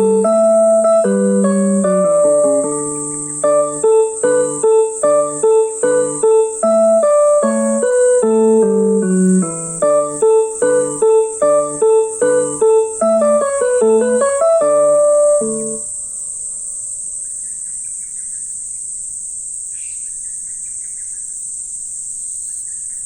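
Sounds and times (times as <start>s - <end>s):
high-pitched insect drone: 0.0s - 17.3s
faint insect chirps: 0.0s - 23.0s.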